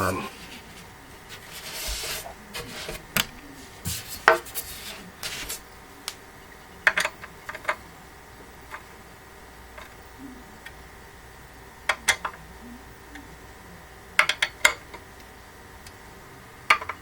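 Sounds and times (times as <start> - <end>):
hand tool scraping on screws: 0.3 - 3.1.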